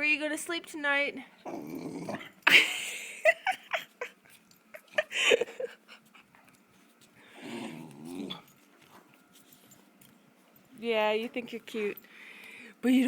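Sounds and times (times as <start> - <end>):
puppy grumbling: 1.4 - 2.5, 7.3 - 8.6
puppy whining: 5.6 - 8.7.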